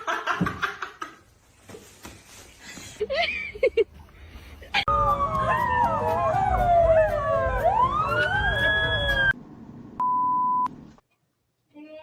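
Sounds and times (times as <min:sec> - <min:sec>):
siren wailing: 0:04.9 - 0:09.4.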